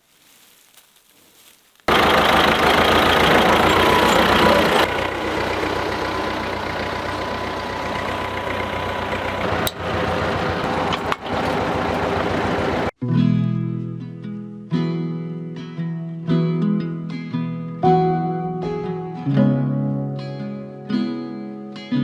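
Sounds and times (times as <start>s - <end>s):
tractor engine chugging: 1.9s - 12.9s.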